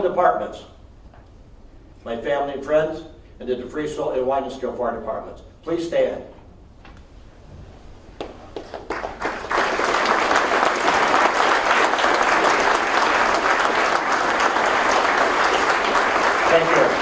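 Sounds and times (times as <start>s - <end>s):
audience applause: 8.5s - 17.0s.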